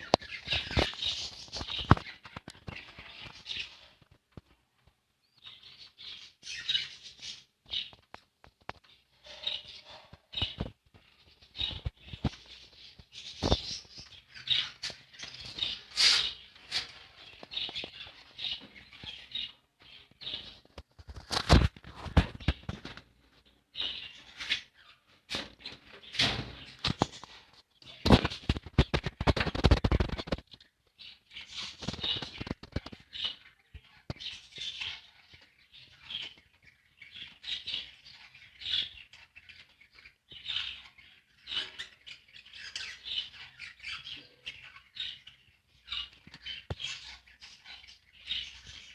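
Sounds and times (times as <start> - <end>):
budgerigars chirping: 0.0 - 3.9, 5.4 - 8.0, 8.9 - 20.6, 31.0 - 48.9.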